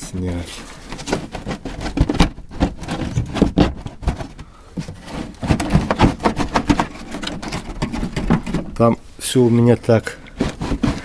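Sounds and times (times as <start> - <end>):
plastic knocking clicking and scraping: 0.0 - 9.0, 10.1 - 11.0.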